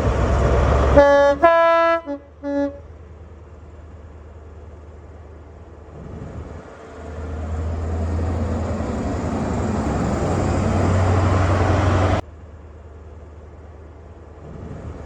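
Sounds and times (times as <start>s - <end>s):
train rushing past: 0.0s - 1.7s, 6.0s - 12.2s.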